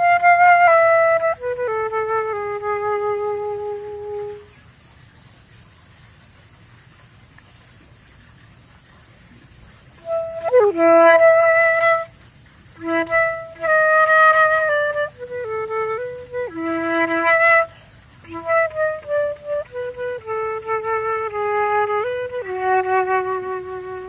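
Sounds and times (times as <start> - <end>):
solo flute: 0.0 - 4.6, 10.0 - 24.0.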